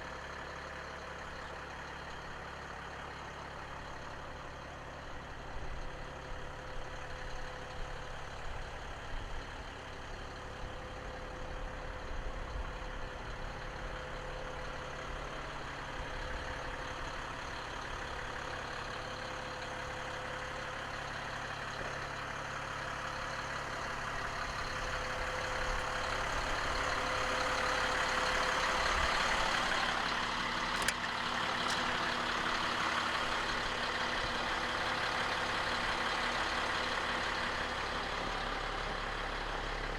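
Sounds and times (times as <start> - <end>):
diesel truck engine rumble: 0.0 - 39.9
sharp clicks: 30.7 - 31.9.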